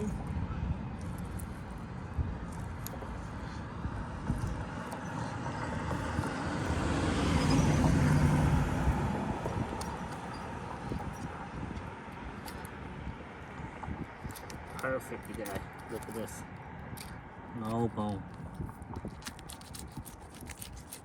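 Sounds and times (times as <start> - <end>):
car passing by: 5.2 - 9.8.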